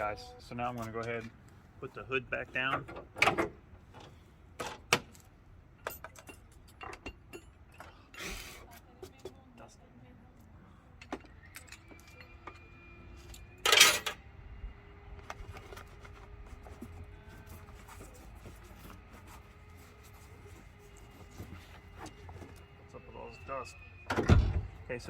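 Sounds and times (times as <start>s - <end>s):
metal clinks and rattles: 5.2s - 8.0s.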